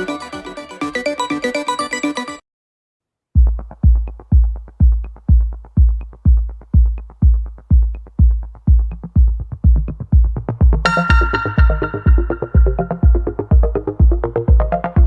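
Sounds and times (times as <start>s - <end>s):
electronic music: 0.0s - 2.4s, 7.0s - 15.0s
heavy bass kick drum: 3.4s - 15.0s.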